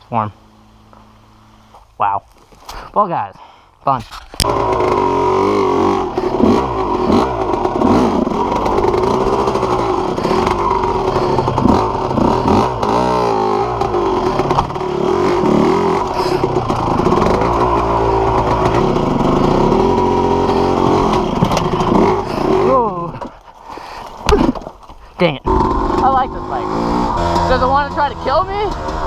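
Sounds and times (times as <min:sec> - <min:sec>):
two-stroke dirt bike revving: 0:04.4 - 0:23.3, 0:25.4 - 0:29.0.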